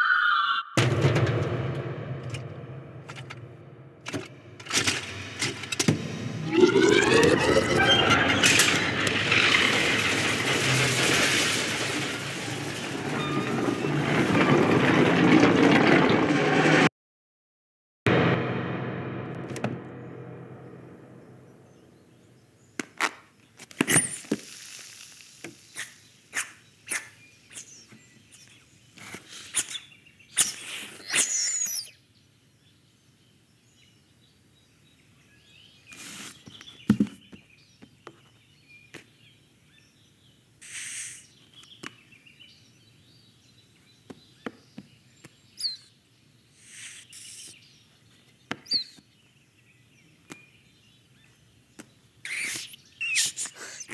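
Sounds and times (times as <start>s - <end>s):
heavy thump: 0.8s - 6.4s, 18.1s - 21.8s
clicks and knocks: 0.8s - 16.3s.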